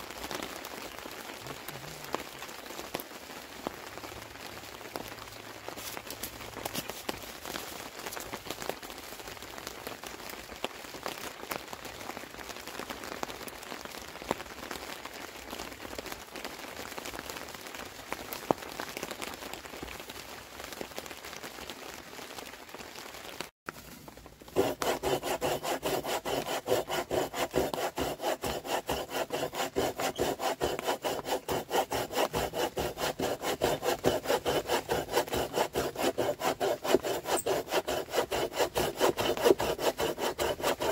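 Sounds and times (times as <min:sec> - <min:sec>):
steady rain: 0:00.0 - 0:24.6
hand saw cutting wood: 0:24.5 - 0:40.9.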